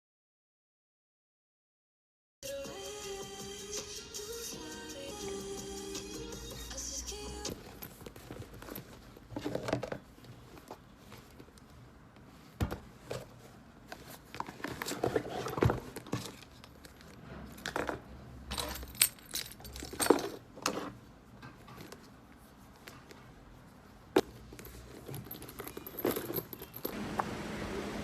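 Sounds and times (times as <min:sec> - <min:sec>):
small hard objects clinking: 0:25.1 - 0:27.0.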